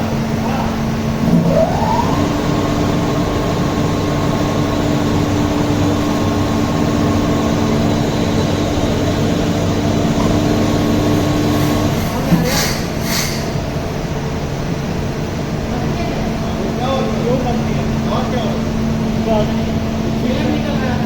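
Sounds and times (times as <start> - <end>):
water pump motor humming: 0.0 - 14.5.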